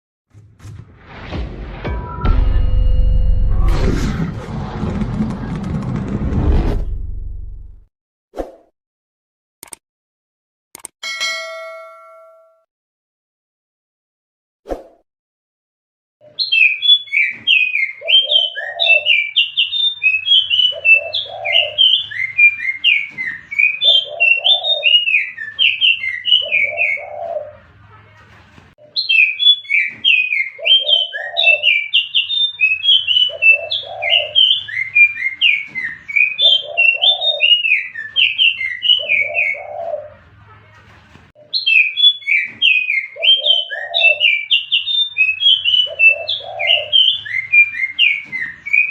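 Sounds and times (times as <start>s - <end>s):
single click: 9.6s - 9.8s, 10.8s - 11.0s
recorded bird song chirping: 16.2s - 27.7s, 28.8s - 40.3s, 41.4s - 48.9s.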